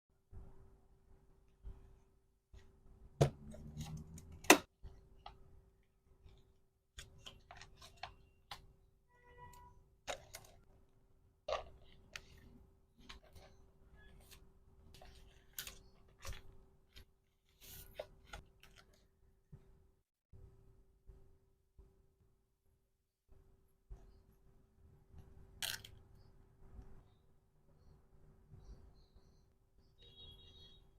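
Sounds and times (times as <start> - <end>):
plastic items clicking and rustling: 10.0 - 10.7.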